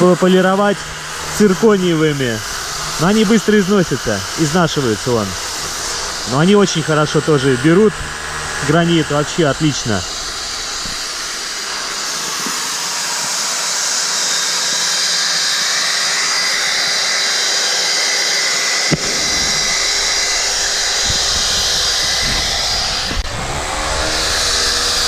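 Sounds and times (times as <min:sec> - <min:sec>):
handheld polisher whining: 0:00.0 - 0:25.0
low rumble: 0:00.8 - 0:12.0, 0:18.9 - 0:25.0.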